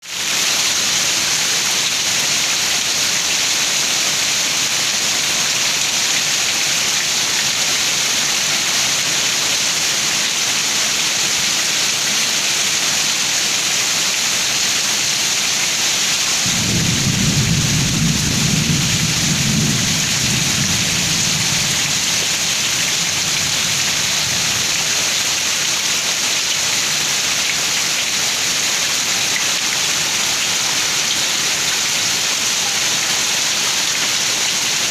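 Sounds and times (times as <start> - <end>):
heavy rain pouring: 0.0 - 34.9
thunder rumbling: 16.4 - 23.6.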